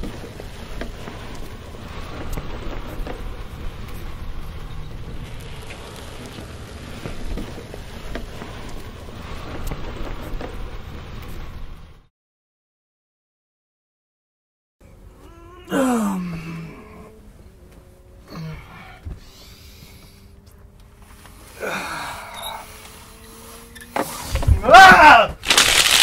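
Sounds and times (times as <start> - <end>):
noisy rumble: 0.0 - 12.1
clicks and crackles: 5.0 - 8.9, 25.4 - 26.0.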